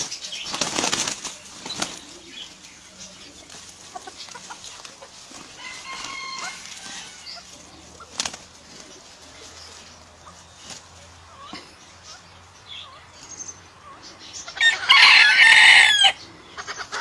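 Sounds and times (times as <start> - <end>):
birds scuffling with wing flaps: 0.0 - 11.6.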